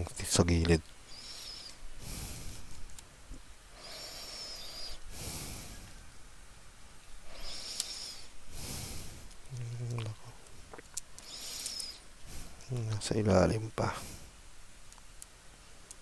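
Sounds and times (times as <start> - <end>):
thin wavering whistle: 1.1 - 1.8, 3.8 - 6.2, 7.3 - 8.4
person breathing heavily through nose: 1.1 - 2.8, 3.7 - 6.1, 7.2 - 9.5, 11.2 - 12.7, 13.9 - 14.4.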